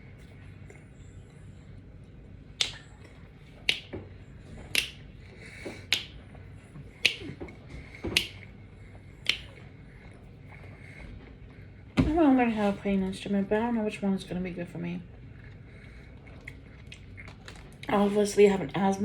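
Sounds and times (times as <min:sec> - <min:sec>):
mouth smacking while chewing: 0:02.6 - 0:11.0, 0:15.2 - 0:18.0.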